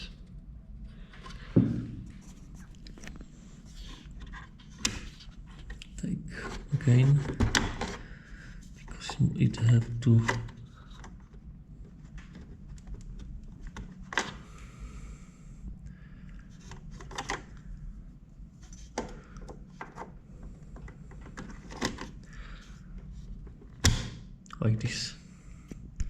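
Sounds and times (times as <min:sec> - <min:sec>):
steady low hum: 0:00.0 - 0:26.0
plastic clicks and rustles: 0:16.6 - 0:17.6.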